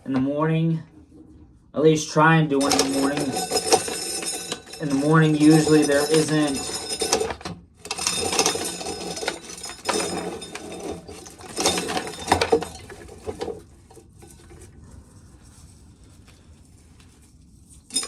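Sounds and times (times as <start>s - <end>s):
corn kernels clattering into pail: 2.6s - 13.6s.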